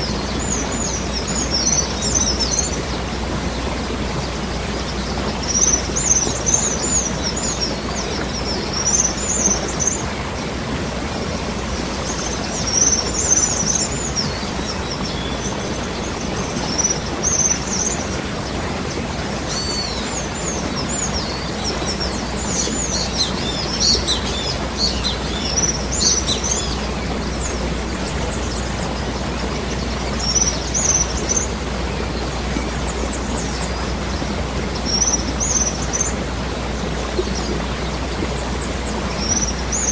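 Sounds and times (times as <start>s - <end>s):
waterfall rushing: 0.0s - 39.9s
small birds chirping: 11.9s - 39.9s.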